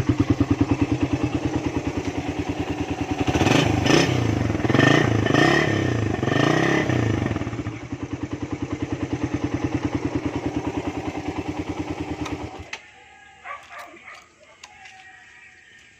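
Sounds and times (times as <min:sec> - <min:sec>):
engine exhaust revving and idling: 0:00.0 - 0:12.8.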